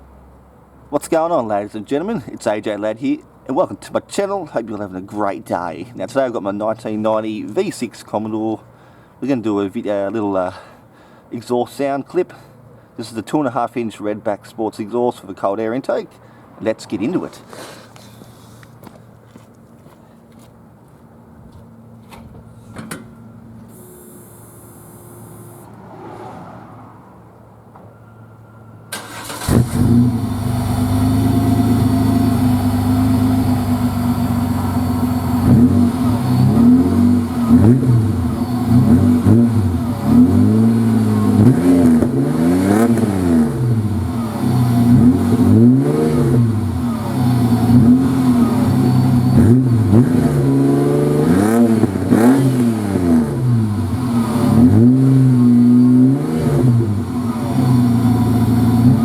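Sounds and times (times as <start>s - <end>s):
car engine starting and idling: 22.1s - 59.0s
engine revving in blips: 28.9s - 59.0s.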